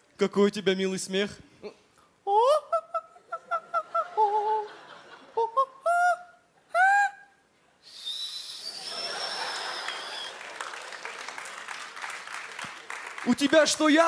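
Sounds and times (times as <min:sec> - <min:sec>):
hooting honking laugh: 0:02.6 - 0:05.7, 0:08.7 - 0:10.4
high whistle: 0:07.9 - 0:10.4
audience applause: 0:08.8 - 0:14.0.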